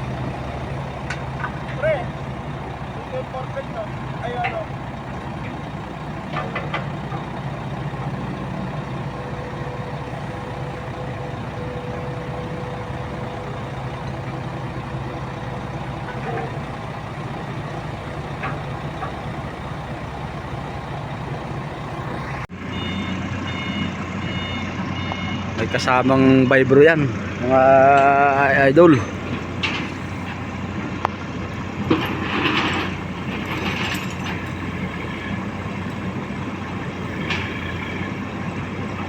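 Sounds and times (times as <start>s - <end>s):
engine running: 0.0s - 39.0s
heavy diesel machinery droning: 0.0s - 39.0s
high reversing alarm beeps: 22.7s - 25.8s.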